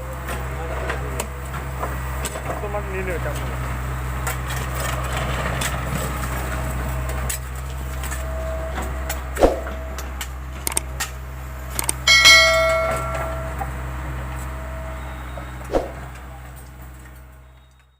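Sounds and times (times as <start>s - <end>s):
low engine hum: 0.0s - 17.9s
knocks and clicks: 10.6s - 10.8s
loud ringing metallic strike: 12.0s - 14.0s.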